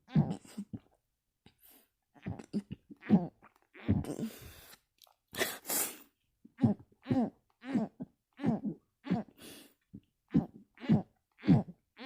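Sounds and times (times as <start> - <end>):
noisy breath out: 4.2 - 4.8, 9.4 - 9.8.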